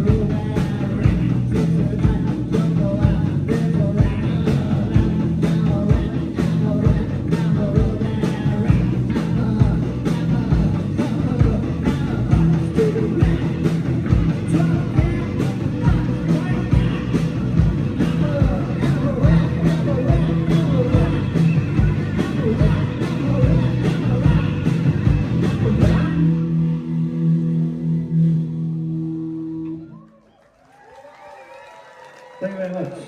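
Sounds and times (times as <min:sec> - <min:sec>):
drum beat: 0:00.0 - 0:26.2
electric guitar: 0:00.0 - 0:30.0
bass: 0:00.0 - 0:30.2.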